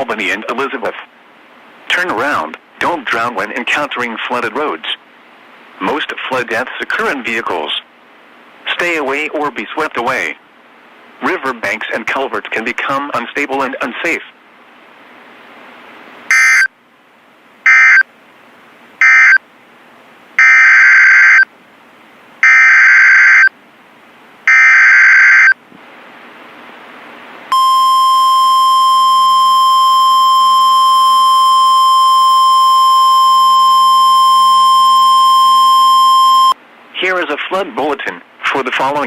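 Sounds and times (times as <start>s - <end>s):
steady alert tone: 16.3s - 16.7s.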